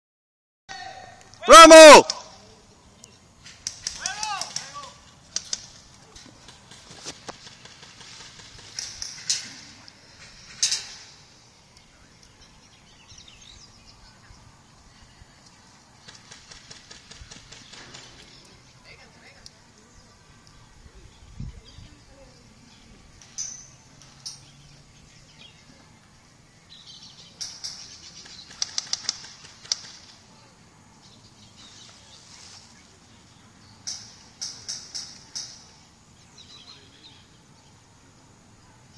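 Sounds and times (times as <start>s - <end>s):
outdoor background: 0.7s - 38.9s
sharp cracks: 1.2s - 2.4s, 3.0s - 12.4s, 16.0s - 18.6s, 27.4s - 30.3s, 33.8s - 35.8s
rustling hiss: 1.2s - 38.9s
airsoft guns firing sharp snaps: 3.6s - 5.9s, 27.4s - 30.2s, 33.9s - 35.7s
faint rustling: 31.5s - 35.8s.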